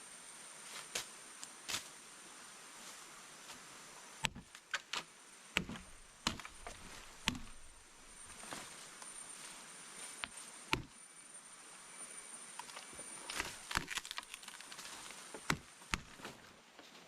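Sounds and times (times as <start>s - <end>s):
high-pitched insect whine: 6.7s - 13.7s.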